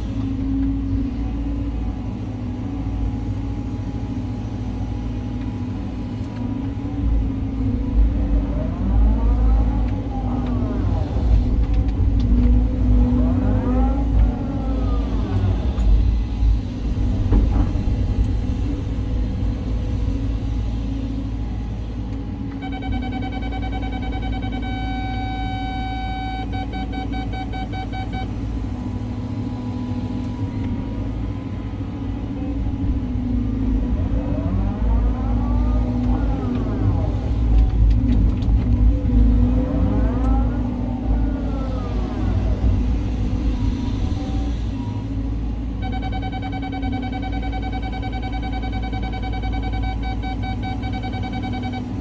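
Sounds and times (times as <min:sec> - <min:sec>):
excavator diesel engine running: 0:00.0 - 0:52.0
hydraulic whine: 0:00.0 - 0:52.0
electronic beeping: 0:22.6 - 0:28.4, 0:45.8 - 0:52.0.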